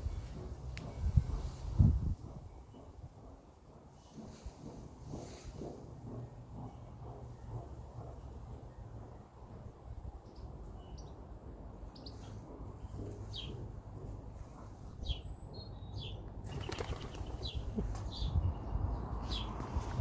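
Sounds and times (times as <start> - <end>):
birds chirping: 6.2 - 20.0
rustling fluttering noise: 16.4 - 18.2.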